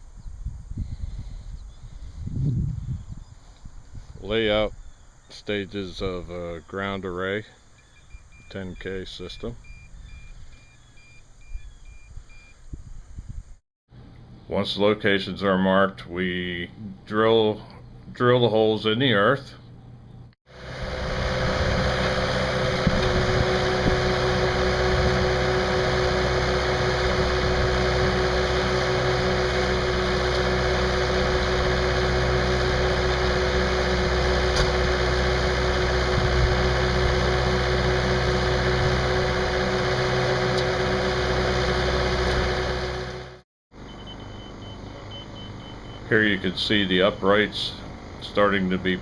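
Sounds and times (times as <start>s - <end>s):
drilling rig engine running: 20.5s - 49.0s.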